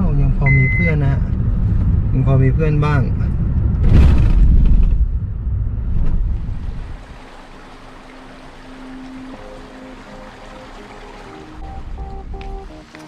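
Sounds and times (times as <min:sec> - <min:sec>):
vehicle rumble: 0:00.0 - 0:12.9
wind buffeting microphone: 0:00.2 - 0:07.4
faint music: 0:07.8 - 0:13.0.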